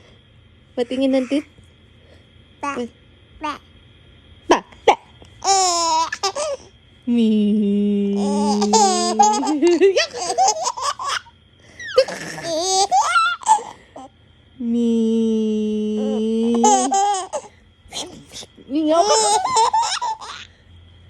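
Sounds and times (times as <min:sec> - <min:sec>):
baby laughing: 0:08.2 - 0:11.3, 0:11.9 - 0:13.8, 0:16.0 - 0:17.5, 0:19.0 - 0:20.5.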